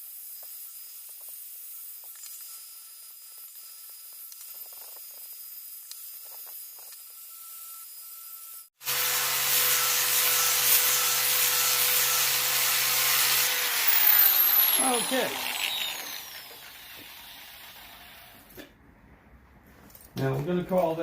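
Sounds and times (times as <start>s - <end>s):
angle grinder sanding metal: 8.8s - 18.6s.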